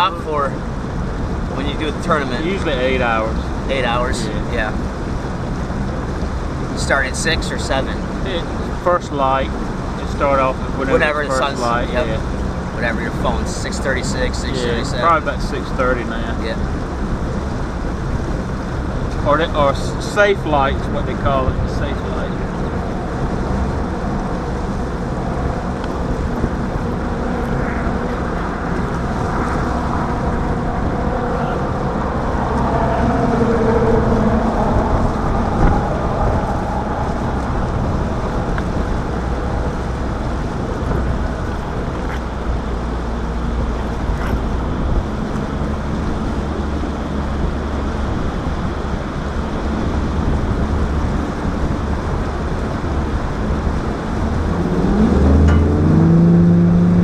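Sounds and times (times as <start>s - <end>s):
boat motor running: 0.0s - 57.0s
wind noise on microphone: 21.0s - 57.0s.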